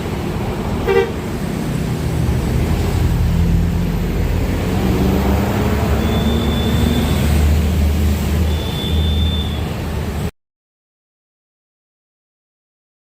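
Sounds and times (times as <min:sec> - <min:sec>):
bus engine drone: 0:00.0 - 0:10.3
horn toot: 0:00.8 - 0:01.2, 0:05.9 - 0:07.3
thin high whistle: 0:06.0 - 0:07.3, 0:08.5 - 0:09.8.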